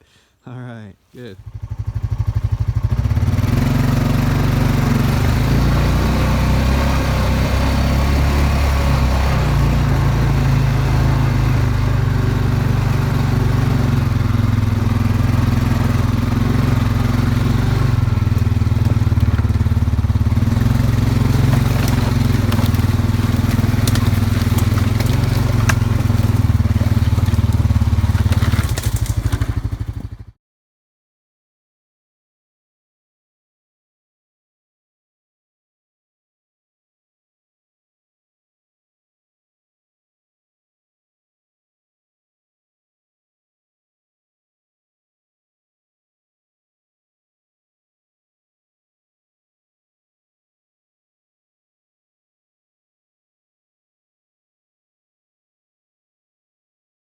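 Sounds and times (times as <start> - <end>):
engine droning: 1.4 - 30.3.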